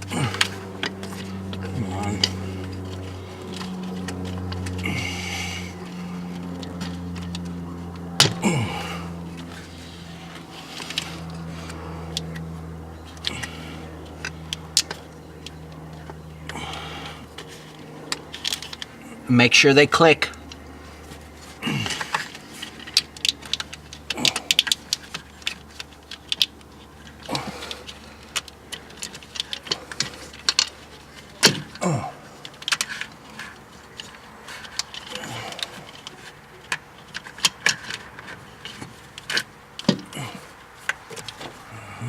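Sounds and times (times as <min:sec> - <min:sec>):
plastic clicks and rattles: 0:18.1 - 0:18.9, 0:21.8 - 0:31.8, 0:32.4 - 0:40.1.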